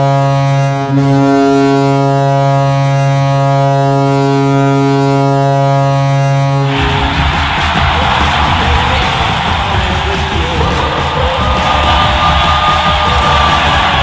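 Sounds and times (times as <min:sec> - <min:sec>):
goal horn blast: 0:00.0 - 0:14.0
music: 0:05.9 - 0:14.0
crowd cheering: 0:06.5 - 0:14.0.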